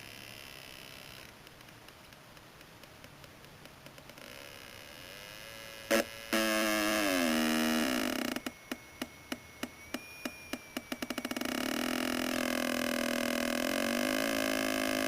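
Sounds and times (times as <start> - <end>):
buzzy tone dropping in pitch: 4.2 - 15.0
faint wavering electronic tone: 4.2 - 15.0
electronic clicks speeding up: 5.9 - 15.0.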